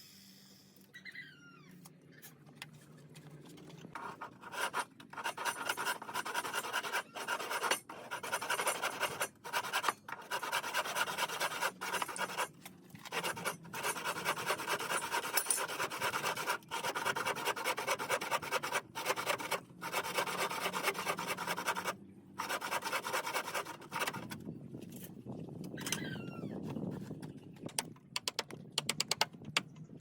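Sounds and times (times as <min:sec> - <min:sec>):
wood sanding scratchy rubbing: 0:04.0 - 0:24.4.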